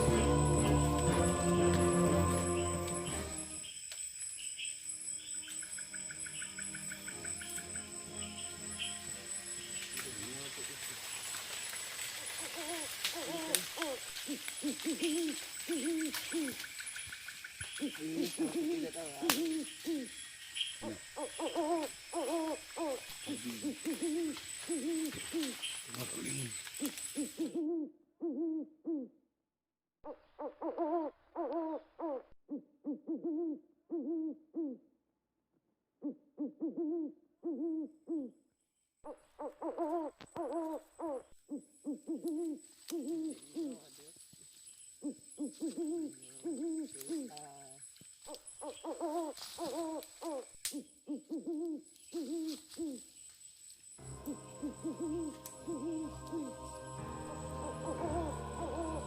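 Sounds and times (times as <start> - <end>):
animal hooting calls: 54.0 - 59.0.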